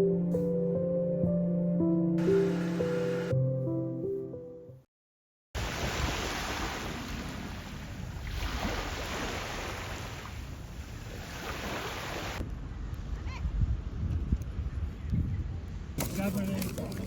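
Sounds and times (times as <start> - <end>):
waves washing onto beach: 5.6 - 12.4
wind rumbling on microphone: 5.6 - 17.0.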